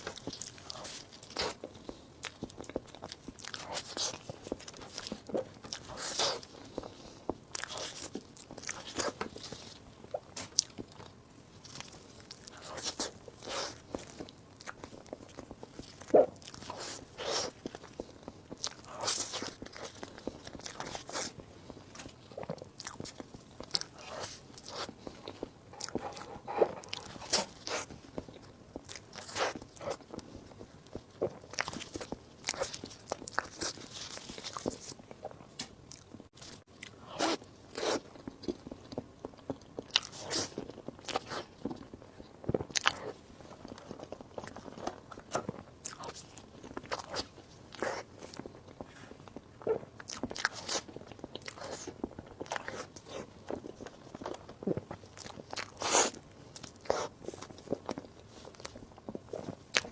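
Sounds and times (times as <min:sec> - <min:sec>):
person chewing: 0:00.0 - 0:59.9
wet mouth sounds: 0:22.4 - 0:33.8.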